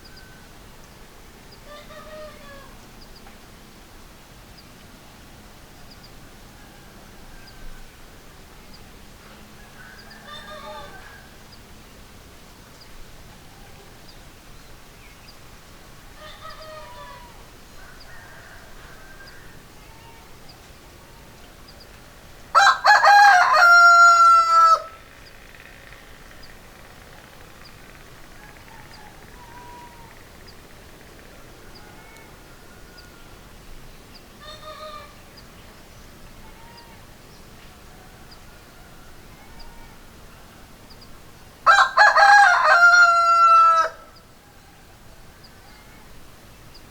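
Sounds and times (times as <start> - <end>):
rooster crowing: 6.3 - 8.0, 9.4 - 11.6, 16.1 - 20.3, 22.5 - 25.1, 28.2 - 30.6, 31.6 - 33.5, 37.8 - 40.1, 41.6 - 45.8
soft chicken calls: 9.3 - 11.7, 16.1 - 21.7, 27.8 - 33.5, 34.4 - 35.6.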